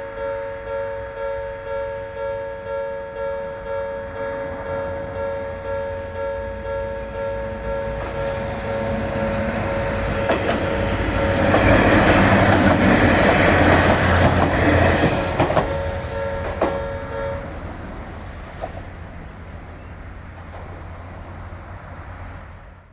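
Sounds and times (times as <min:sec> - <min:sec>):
train wheels clacking over joints: 0:07.8 - 0:17.1.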